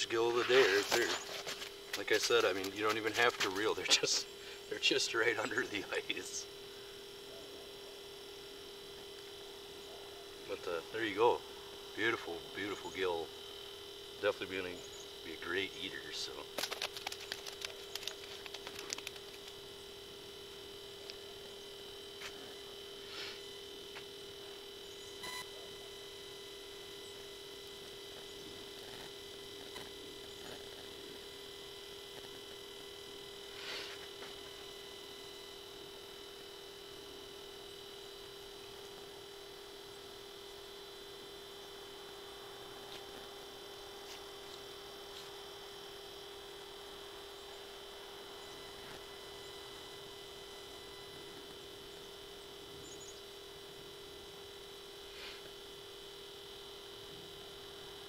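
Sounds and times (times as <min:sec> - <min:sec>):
high whine: 0:00.0 - 0:58.0
pure-tone hum: 0:00.0 - 0:58.0.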